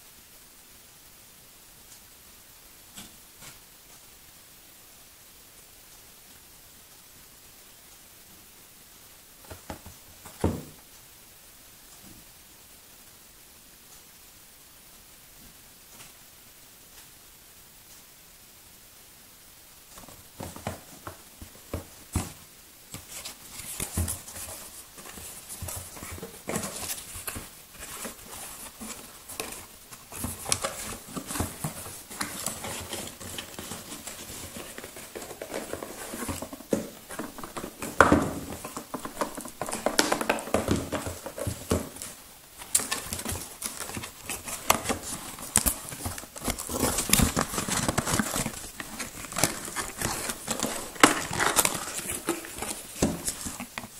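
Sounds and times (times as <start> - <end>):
packaging rustling and scraping: 20.0 - 53.9.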